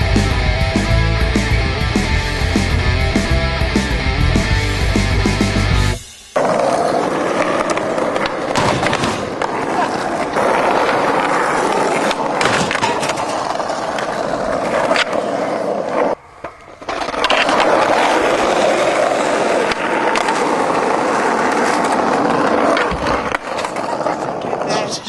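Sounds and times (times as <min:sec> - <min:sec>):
skateboard wheels rolling: 0:00.0 - 0:25.0
skateboard clacks: 0:06.4 - 0:24.7.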